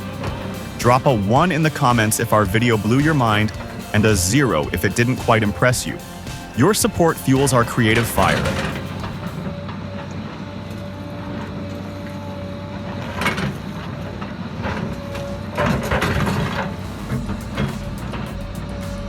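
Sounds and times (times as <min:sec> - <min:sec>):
machinery clunks: 0:00.0 - 0:09.5
heavy machinery engine hum: 0:00.0 - 0:19.0.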